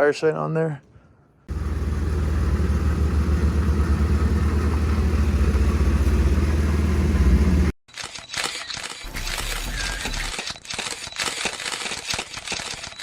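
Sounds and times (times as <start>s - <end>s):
car engine idling: 1.5s - 7.7s.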